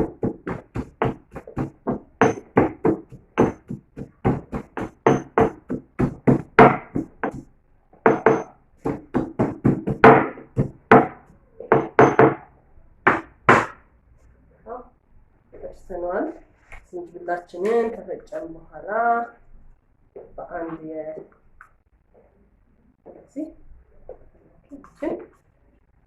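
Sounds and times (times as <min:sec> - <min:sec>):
pestle pounding in mortar: 0:00.0 - 0:12.5, 0:13.1 - 0:13.8.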